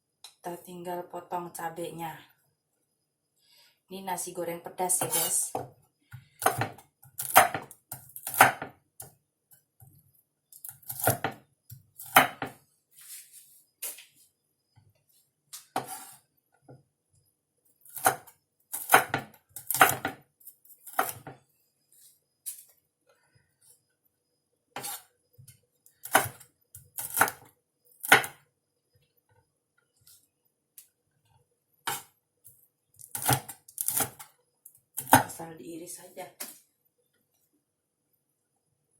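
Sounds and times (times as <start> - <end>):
knife chopping on cutting board: 6.4 - 8.8, 10.9 - 11.4, 12.0 - 12.6, 17.9 - 20.2, 28.0 - 28.4.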